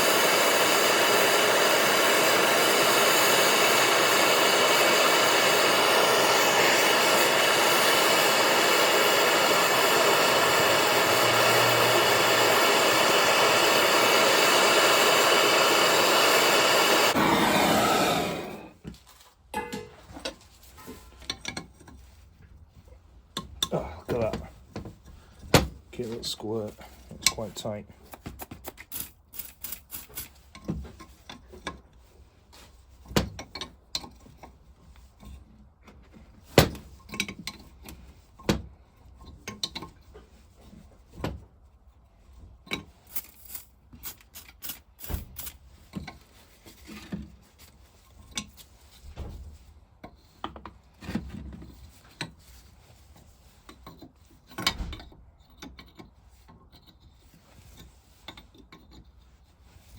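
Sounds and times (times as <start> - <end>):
hand tools clinking and scraping: 19.1 - 22.2, 26.0 - 31.8, 42.7 - 49.0.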